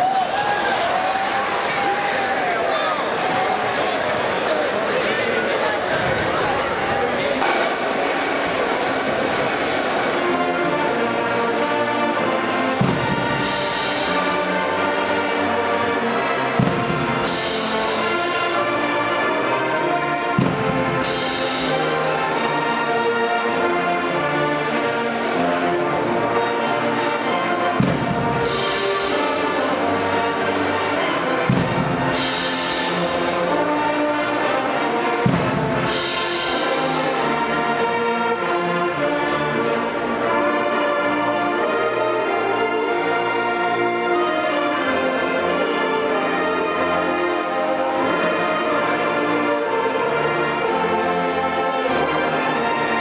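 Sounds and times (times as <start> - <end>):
brass band music: 0.0 - 53.0.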